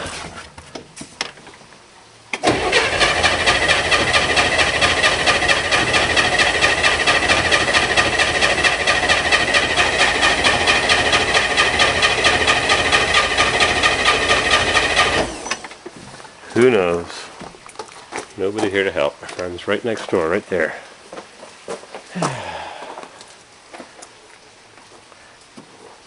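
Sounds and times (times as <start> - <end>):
engine starter cranking: 2.3 - 15.8.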